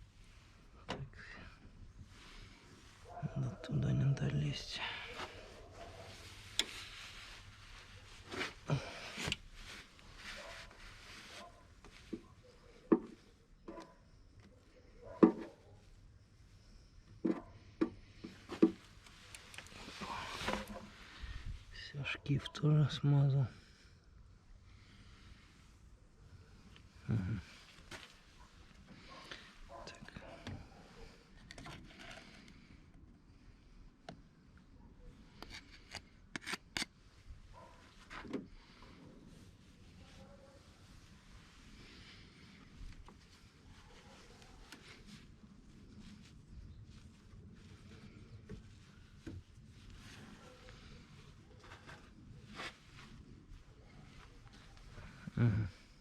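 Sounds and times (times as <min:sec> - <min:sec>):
hands rustling: 0:05.1 - 0:12.6.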